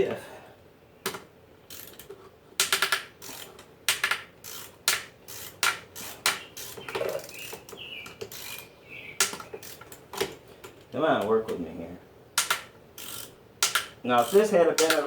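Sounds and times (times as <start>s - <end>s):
drill ratcheting clicks: 1.1s - 10.0s, 12.4s - 15.0s.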